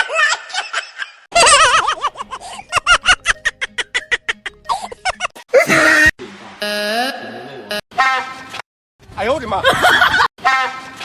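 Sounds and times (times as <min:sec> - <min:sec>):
person laughing: 0:09.6 - 0:10.3.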